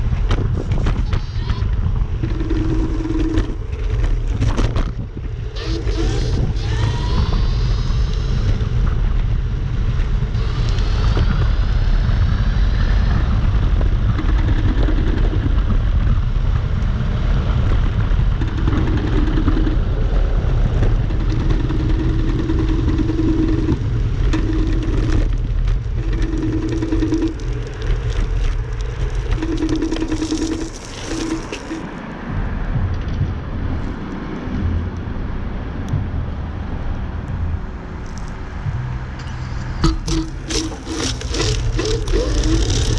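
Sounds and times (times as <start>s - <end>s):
wind on microphone: 0.0s - 39.1s, 39.8s - 42.9s
road rumble: 0.0s - 42.9s
electric motor whine: 5.5s - 8.8s.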